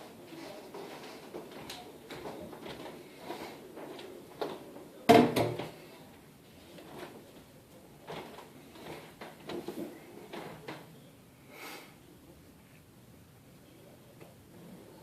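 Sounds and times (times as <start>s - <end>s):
soft knocks and handling noises: 0.0s - 11.0s
loud clunk with rattle: 5.1s - 5.8s.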